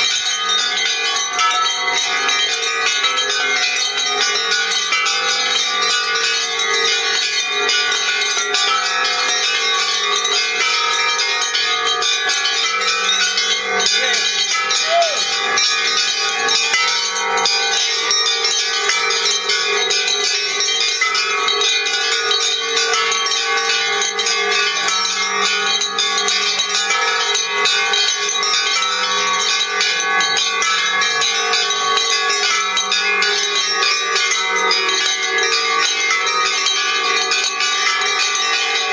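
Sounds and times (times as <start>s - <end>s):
many bells ringing: 0.0s - 38.9s.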